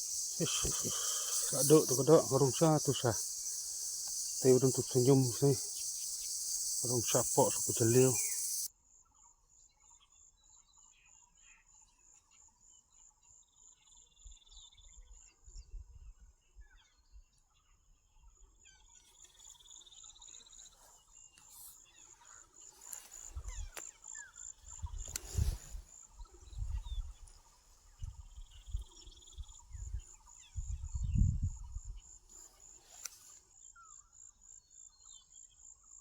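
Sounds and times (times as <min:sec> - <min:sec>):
insect trilling: 0:00.0 - 0:08.7
insects chirping: 0:00.0 - 0:08.7, 0:21.4 - 0:33.7.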